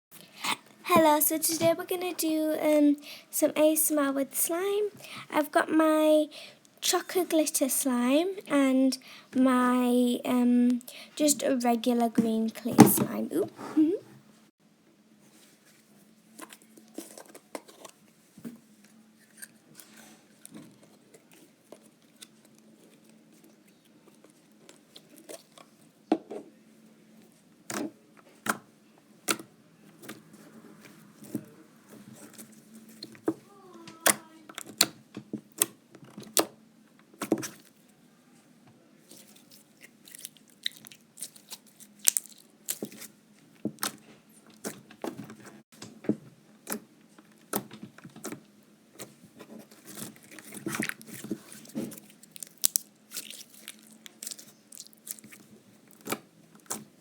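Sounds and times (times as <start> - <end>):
slime squished by hand: 39.1 - 43.1, 49.9 - 56.9.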